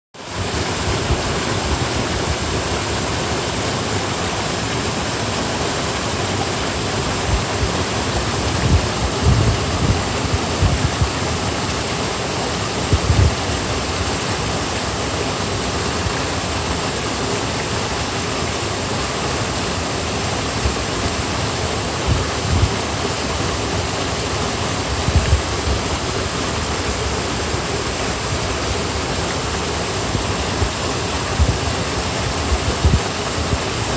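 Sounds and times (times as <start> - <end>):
rushing water: 0.2 - 33.9
low bumps: 8.6 - 11.2, 24.9 - 28.7, 30.0 - 33.8.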